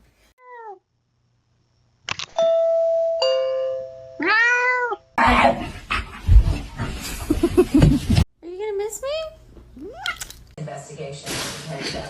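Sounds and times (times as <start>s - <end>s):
doorbell ding-dong chime: 2.4s - 4.2s
cat meowing: 4.2s - 5.0s.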